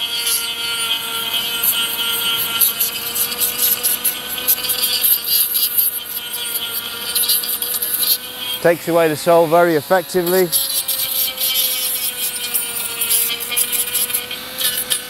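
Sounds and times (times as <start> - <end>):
disc rasping hoof: 0.0 - 15.0
grinder whining: 0.0 - 15.0.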